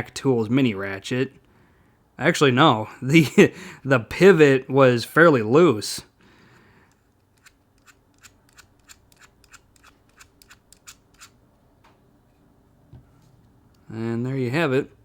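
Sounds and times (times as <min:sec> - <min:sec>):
small metallic clicks of screwdriver: 0:06.9 - 0:11.4.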